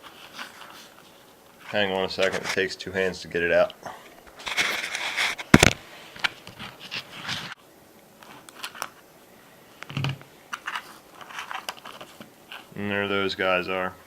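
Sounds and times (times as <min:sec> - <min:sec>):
plastic clicks and scrapes: 0:09.9 - 0:12.7.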